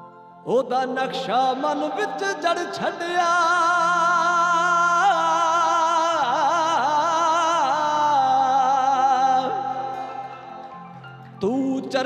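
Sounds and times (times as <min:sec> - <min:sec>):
man singing: 0:00.0 - 0:10.7, 0:11.3 - 0:12.0.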